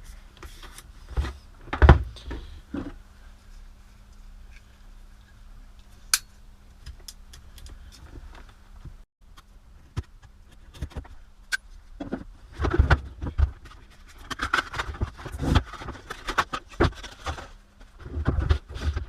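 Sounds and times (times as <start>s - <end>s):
handling clicks knocks and rustles: 5.8s - 19.0s.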